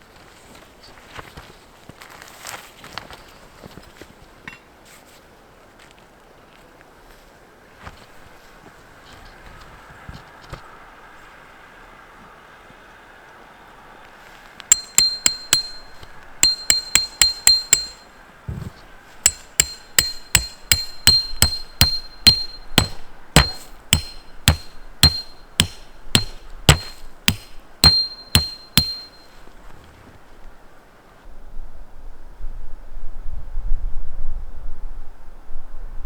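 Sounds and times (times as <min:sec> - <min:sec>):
hammer striking metal tent peg: 0:14.7 - 0:18.1, 0:19.3 - 0:29.3.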